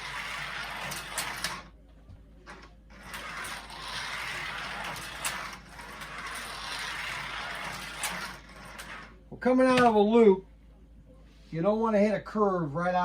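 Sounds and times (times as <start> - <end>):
slot car motors whirring: 0.0 - 1.8, 2.4 - 10.0.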